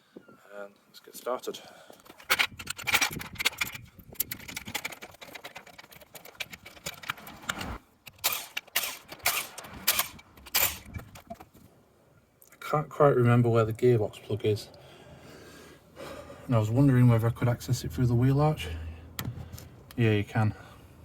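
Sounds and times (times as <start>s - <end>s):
metal equipment clicks and clanks: 2.0s - 11.5s.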